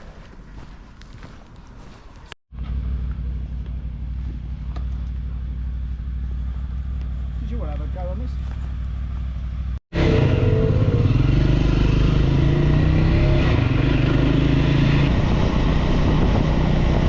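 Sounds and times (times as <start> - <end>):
motorcycle engine running: 2.5 - 17.0
rushing wind: 10.0 - 17.0.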